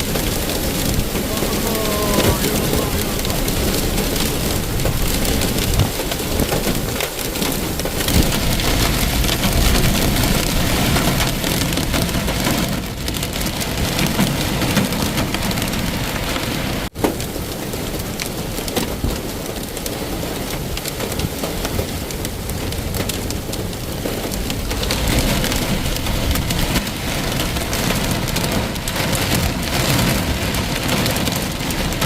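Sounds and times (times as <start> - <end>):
heavy rain pouring: 0.0 - 32.0.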